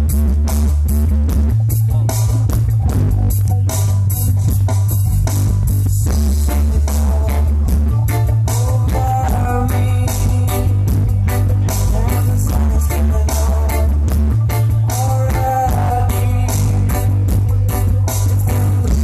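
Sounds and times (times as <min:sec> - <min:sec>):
loud rock music with heavy bass: 0:00.0 - 0:19.0.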